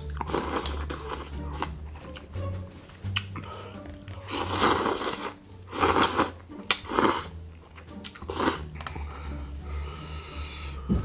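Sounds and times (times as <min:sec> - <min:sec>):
crunchy food chewing: 0:00.0 - 0:02.3, 0:04.1 - 0:09.1.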